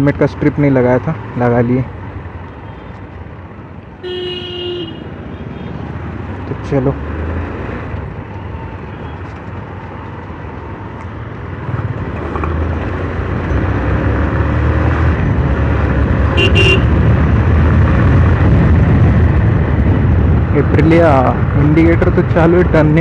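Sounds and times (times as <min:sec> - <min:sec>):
motorcycle engine accelerating: 0:11.4 - 0:20.5
wind noise on microphone: 0:14.9 - 0:23.0.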